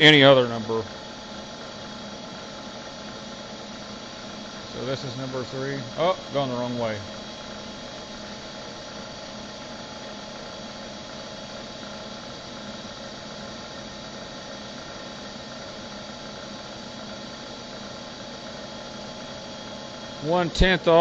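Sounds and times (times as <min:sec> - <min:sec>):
milling machine humming: 0:00.0 - 0:21.0.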